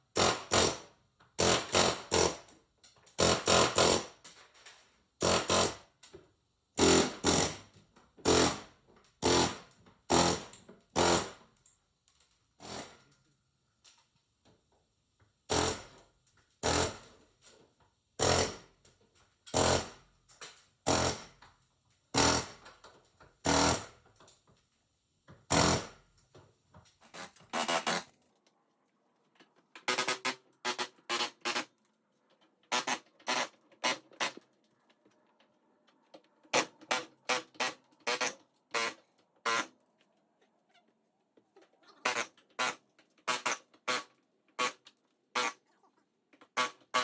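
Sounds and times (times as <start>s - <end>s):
pneumatic air hammer bursts: 0.2s - 0.8s, 1.4s - 2.4s, 3.2s - 4.1s, 5.2s - 5.8s, 6.8s - 7.6s, 8.2s - 11.4s, 12.6s - 13.0s, 15.5s - 16.0s, 16.6s - 17.2s, 18.2s - 18.7s, 19.5s - 20.0s, 20.8s - 21.4s, 22.1s - 22.6s, 23.4s - 24.0s, 25.5s - 26.0s, 29.9s - 31.7s, 32.7s - 34.4s, 36.6s - 39.7s, 42.1s - 44.8s.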